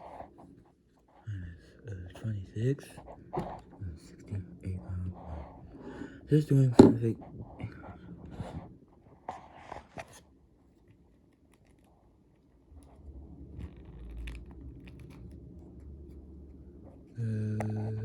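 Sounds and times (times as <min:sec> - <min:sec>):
low steady hum: 0:00.0 - 0:18.0
scratchy rustling: 0:08.4 - 0:17.1.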